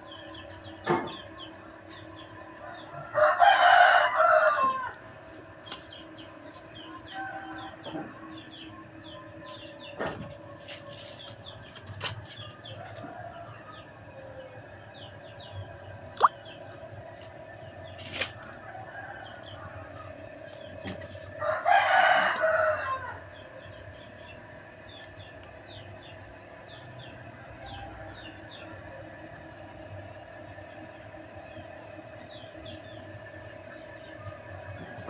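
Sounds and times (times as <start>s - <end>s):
rooster crowing: 2.6s - 5.1s, 7.0s - 7.9s, 21.3s - 23.4s.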